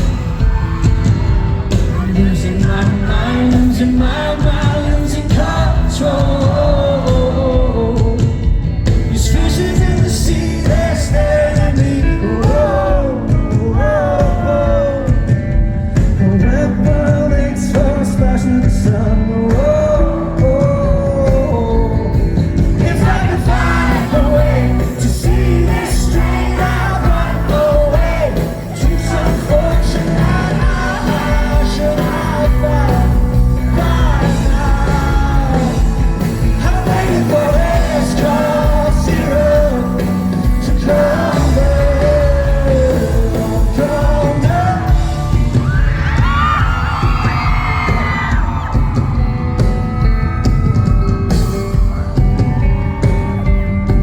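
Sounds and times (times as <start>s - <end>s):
person singing: 0.0s - 15.4s, 16.0s - 48.7s
crowd shouting and cheering: 0.0s - 54.0s
rock band playing live: 0.0s - 54.0s.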